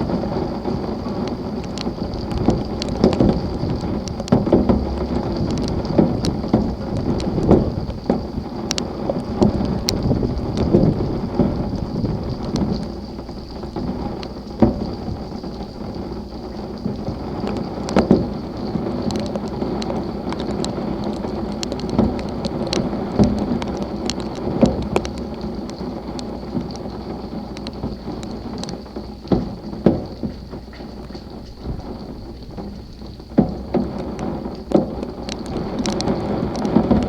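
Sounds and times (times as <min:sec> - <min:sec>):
heavy rain on a hard surface: 0:00.0 - 0:37.0.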